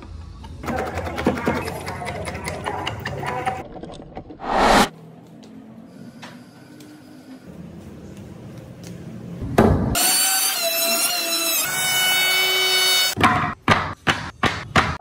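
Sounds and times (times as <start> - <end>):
faint workshop noise: 4.9 - 15.0.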